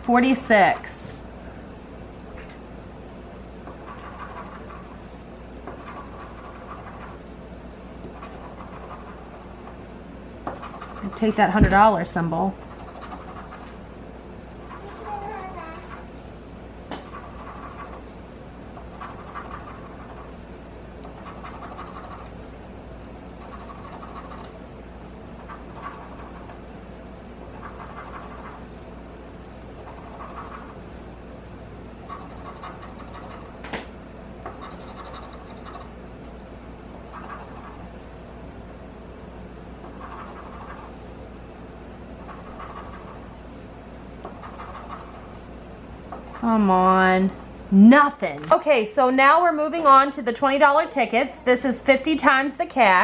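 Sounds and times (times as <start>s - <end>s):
scratching lottery ticket: 3.7s - 7.3s, 8.1s - 9.9s, 10.5s - 11.6s, 12.5s - 13.8s, 17.0s - 22.5s, 23.3s - 24.6s, 25.4s - 26.8s, 27.4s - 28.9s, 29.7s - 30.9s, 32.0s - 33.6s, 34.5s - 36.0s, 37.0s - 38.2s, 39.8s - 41.2s, 42.2s - 43.6s, 44.2s - 45.6s.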